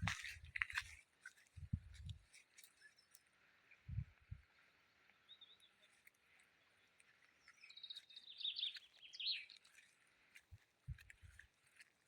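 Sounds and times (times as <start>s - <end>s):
small bird chirping: 5.2s - 9.9s.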